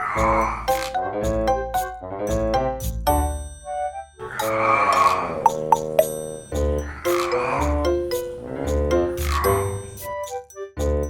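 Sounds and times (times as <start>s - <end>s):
light background music: 5.6s - 11.0s.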